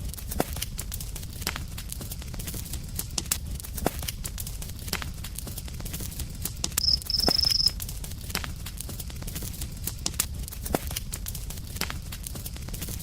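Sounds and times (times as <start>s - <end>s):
campfire crackling and popping: 0.0s - 13.0s
cricket trilling: 6.8s - 7.8s.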